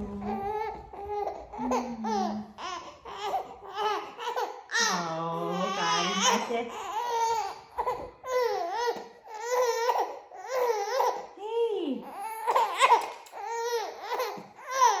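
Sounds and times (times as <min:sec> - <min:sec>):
baby vocalizing: 0:00.0 - 0:05.0.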